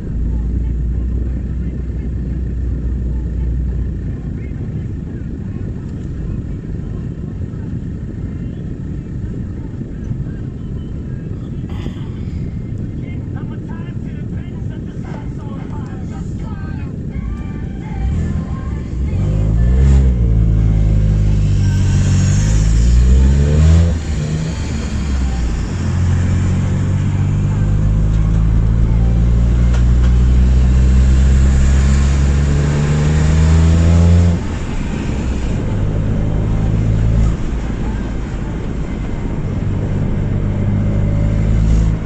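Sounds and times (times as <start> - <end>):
car engine with leaking exhaust: 14.8 - 42.0.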